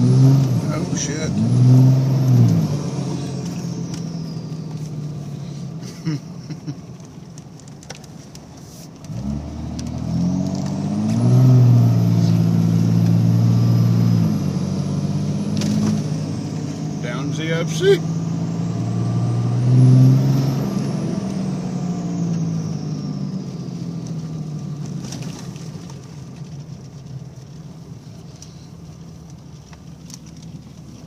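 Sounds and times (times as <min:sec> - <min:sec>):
diesel engine revving: 0:00.0 - 0:07.1, 0:09.0 - 0:27.5.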